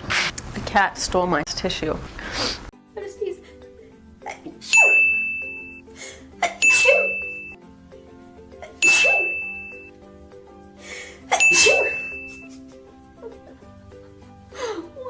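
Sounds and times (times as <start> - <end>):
soft background music: 0.4 - 15.0
sharp intake of breath: 2.2 - 2.7
bright ding: 4.8 - 5.8, 6.6 - 7.6, 8.8 - 9.9, 11.4 - 12.5.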